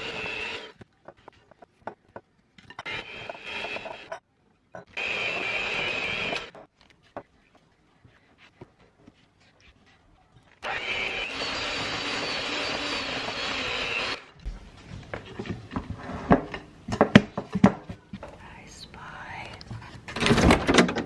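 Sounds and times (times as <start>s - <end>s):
electric mixer running: 0.0s - 0.8s, 5.0s - 6.6s, 10.6s - 14.4s.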